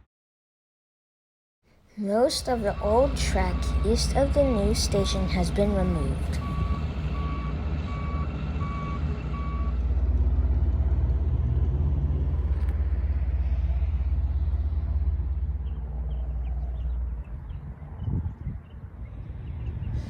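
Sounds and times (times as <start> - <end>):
low vehicle rumble: 2.1 - 20.0
reversing alarm beeping: 2.3 - 9.8.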